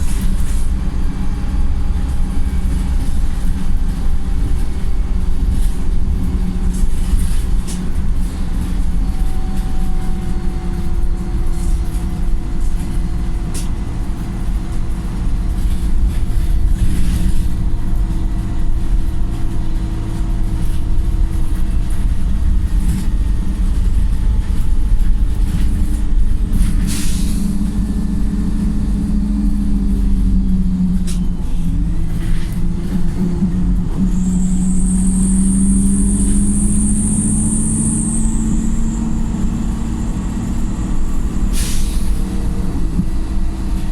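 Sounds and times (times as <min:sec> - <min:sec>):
bus diesel engine drone: 0:00.0 - 0:43.9
air hissing: 0:26.8 - 0:27.6, 0:41.5 - 0:42.3.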